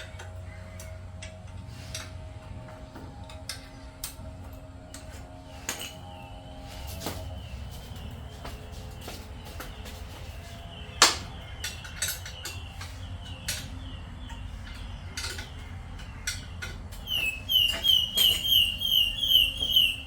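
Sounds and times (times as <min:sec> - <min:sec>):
bird chirping: 0:06.0 - 0:20.0.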